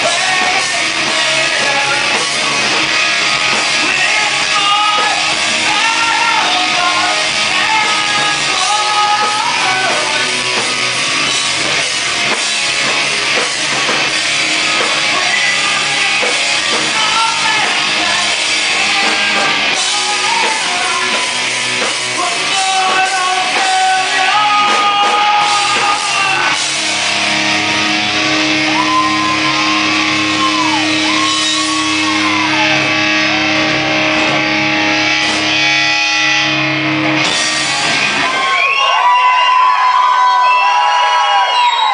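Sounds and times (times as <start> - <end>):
person singing: 0.0 - 2.8, 3.5 - 10.6, 14.5 - 27.2
drum kit: 0.0 - 41.9
electric guitars: 0.0 - 41.9
live rock band playing: 0.0 - 41.9.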